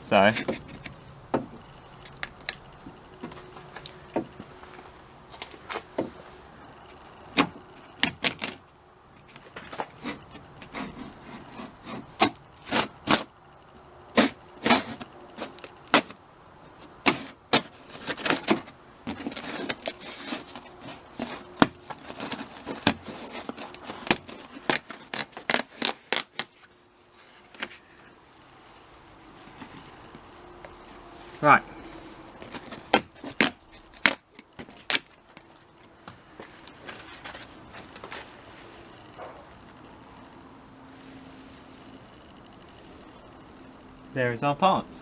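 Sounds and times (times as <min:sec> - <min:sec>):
rubbing and scraping: 0:00.1 - 0:01.0, 0:09.2 - 0:13.3, 0:14.2 - 0:28.2.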